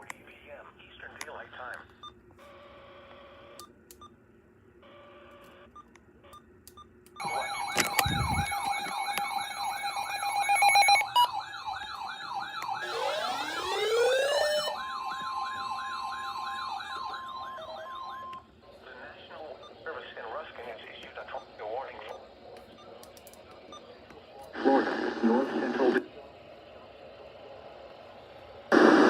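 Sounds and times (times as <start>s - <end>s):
chirping alert data tones: 7.2s - 8.8s
electronic siren sweeping up and down: 7.2s - 18.4s
rising siren tone: 7.2s - 18.4s
steady siren tone: 7.2s - 18.5s.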